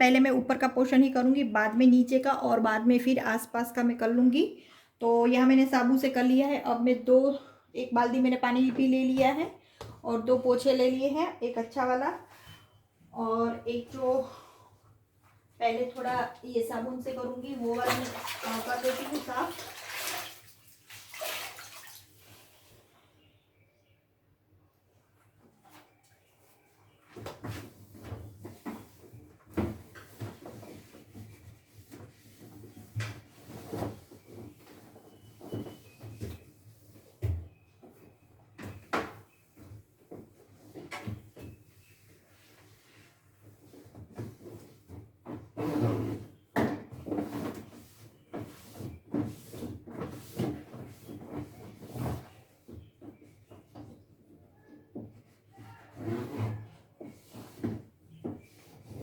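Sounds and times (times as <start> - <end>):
plastic knocks and rubbing: 27.1 - 42.2, 43.4 - 59.0.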